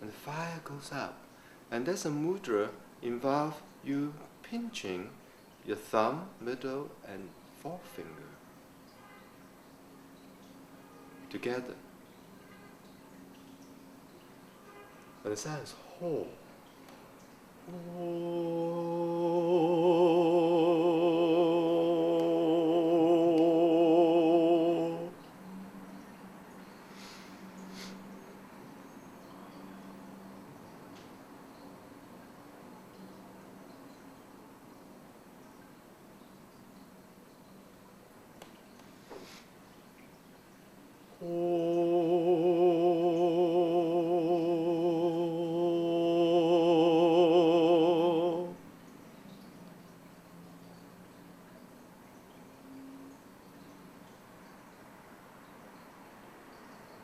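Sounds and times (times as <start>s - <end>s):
man chanting a low sustained tone: 15.3s - 16.4s, 17.7s - 25.2s, 41.2s - 48.6s.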